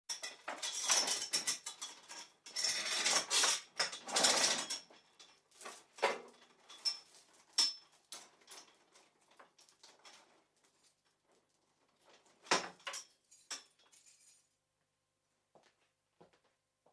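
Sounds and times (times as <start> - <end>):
metal chain rattling: 13.0 - 14.5.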